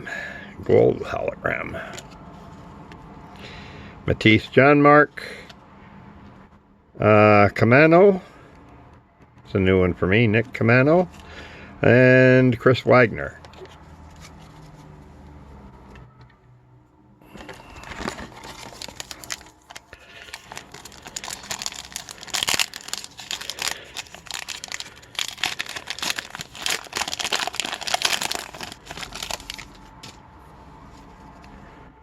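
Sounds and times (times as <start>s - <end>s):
wrapper tearing and crinkling: 17.4s - 30.1s.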